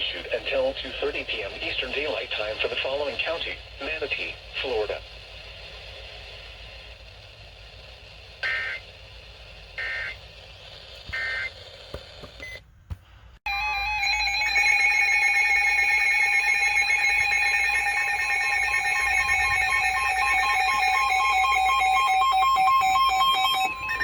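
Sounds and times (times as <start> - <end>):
emergency alert tones: 13.5 - 24.0.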